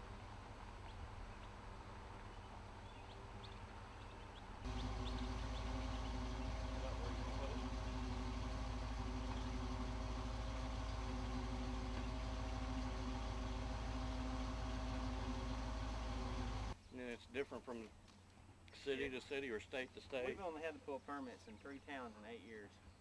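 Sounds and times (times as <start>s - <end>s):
engine idling: 4.6s - 16.8s.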